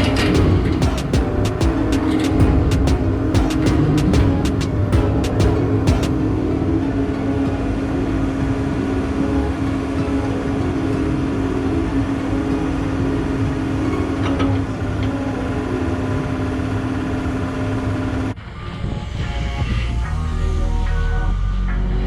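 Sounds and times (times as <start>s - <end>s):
backhoe engine running: 0.0s - 6.2s.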